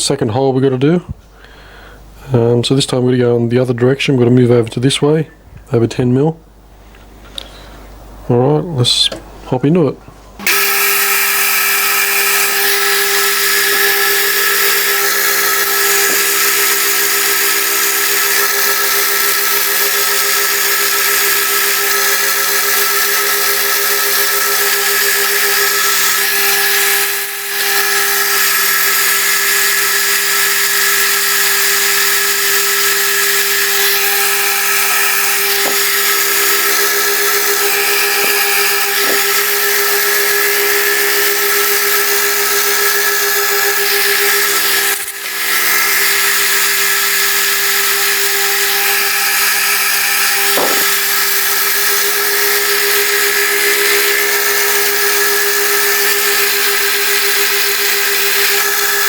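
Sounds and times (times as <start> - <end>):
milling machine humming: 10.4 - 59.0.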